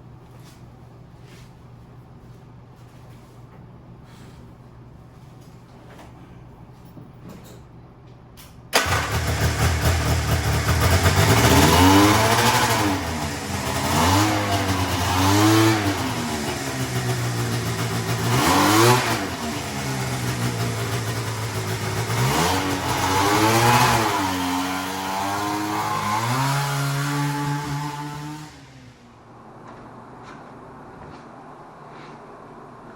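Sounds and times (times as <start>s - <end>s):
two-stroke engine revving: 8.8s - 28.8s.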